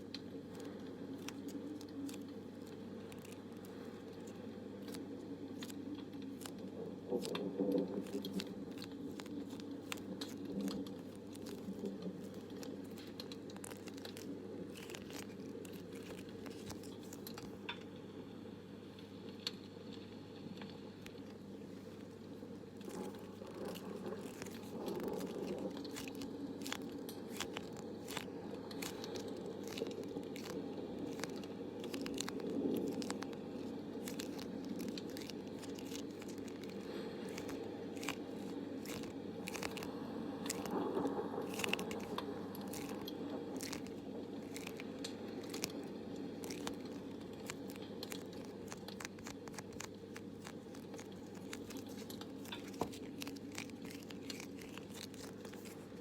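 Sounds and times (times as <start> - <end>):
campfire crackling: 20.5 - 56.0.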